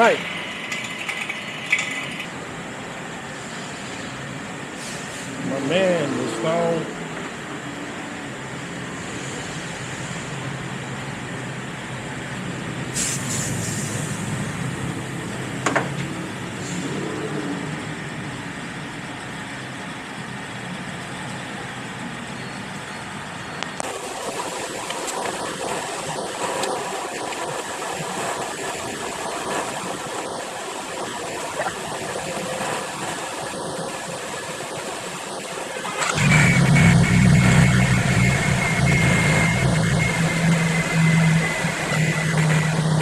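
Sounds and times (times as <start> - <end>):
deep hum with high whine: 23.6 - 43.0.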